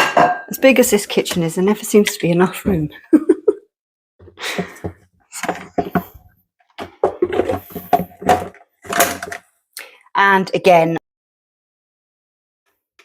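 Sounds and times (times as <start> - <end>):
kitchen items clattering on worktop: 0.0 - 1.5, 4.4 - 9.4.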